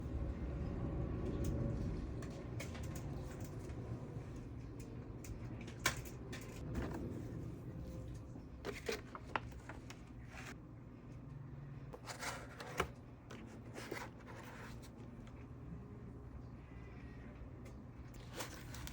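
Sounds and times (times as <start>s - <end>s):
packaging rustling and clicking: 8.7s - 10.6s, 18.2s - 18.9s.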